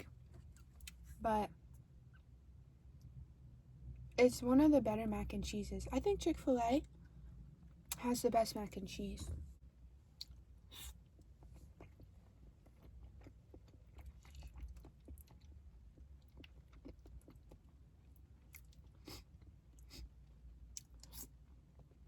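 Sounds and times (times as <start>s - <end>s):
person chewing food: 10.2s - 22.0s.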